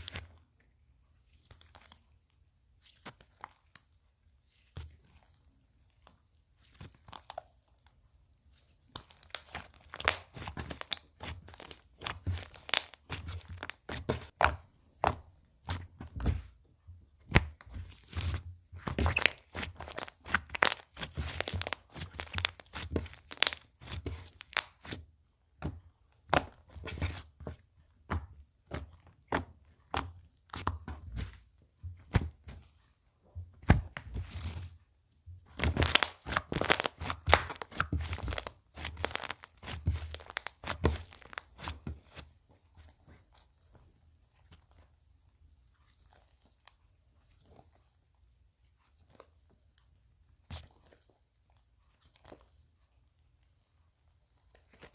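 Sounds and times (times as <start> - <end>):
slime crackling and popping: 9.0 - 14.6, 18.8 - 25.0, 35.6 - 42.2.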